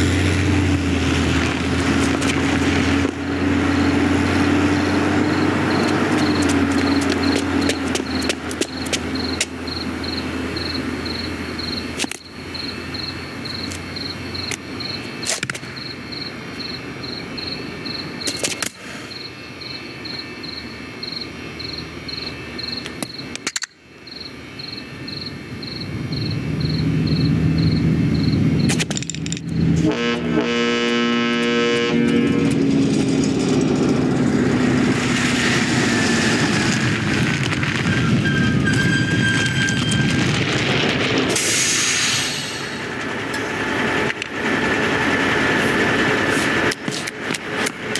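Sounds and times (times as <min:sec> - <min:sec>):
night background noise: 0:00.0 - 0:47.9
vehicle engine drone: 0:00.0 - 0:47.9
crickets chirping: 0:00.5 - 0:30.4.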